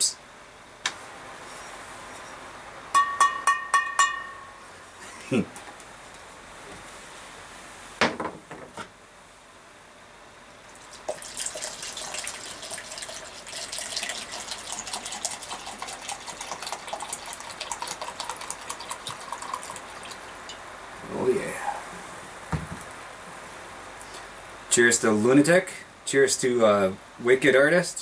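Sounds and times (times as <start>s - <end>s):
liquid pouring into a cup: 10.7s - 20.6s
knock: 22.5s - 22.8s.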